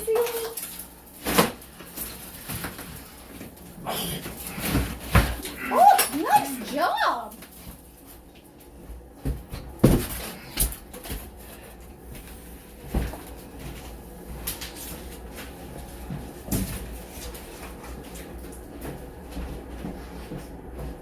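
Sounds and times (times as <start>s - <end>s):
demolition knocks and thuds on wall: 3.9s - 5.6s, 9.2s - 11.3s.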